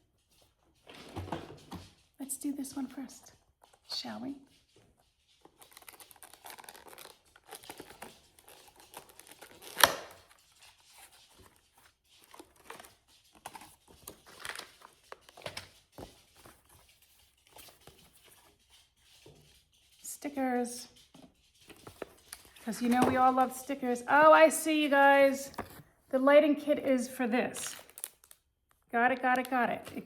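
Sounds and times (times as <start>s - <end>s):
packaging torn and crinkled: 5.7s - 10.3s, 27.7s - 28.4s.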